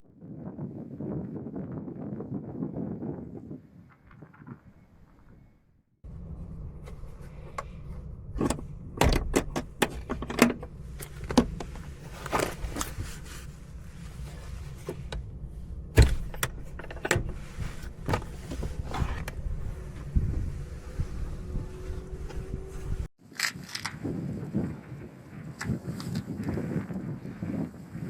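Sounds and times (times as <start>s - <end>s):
vehicle low rumble: 4.1s - 23.2s
sharp clicks and knocks: 8.4s - 12.9s, 16.0s - 19.4s.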